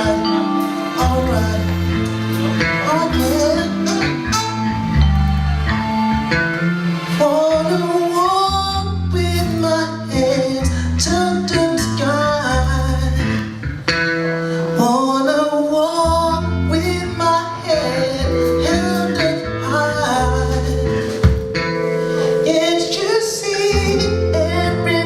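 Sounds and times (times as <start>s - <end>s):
person singing: 0.0s - 6.2s, 7.2s - 13.6s, 14.5s - 25.0s
live band playing: 0.0s - 10.4s, 12.9s - 25.0s
pulsing bass line: 1.0s - 7.1s, 17.8s - 22.9s, 23.5s - 25.0s.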